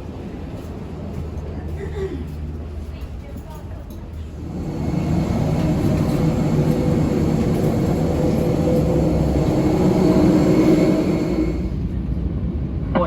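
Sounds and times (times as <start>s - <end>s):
loud mechanical rumble: 4.2s - 12.4s.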